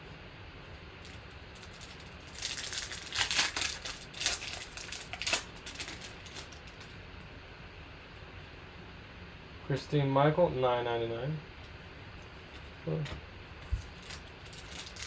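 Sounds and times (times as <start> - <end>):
packaging crinkling: 1.1 - 7.0, 13.7 - 15.0.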